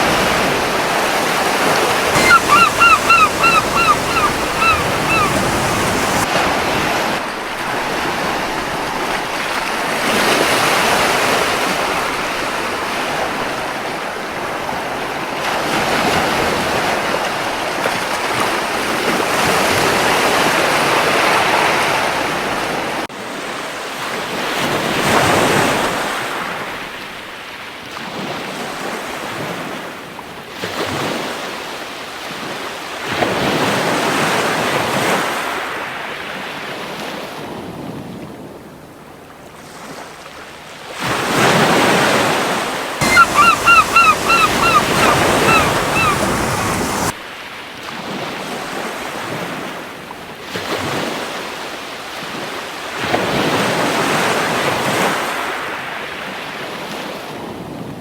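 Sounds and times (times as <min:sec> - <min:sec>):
ocean surf washing onto beach: 0:00.0 - 0:06.8, 0:43.0 - 0:47.1
gull calling: 0:02.2 - 0:06.2, 0:43.0 - 0:47.1.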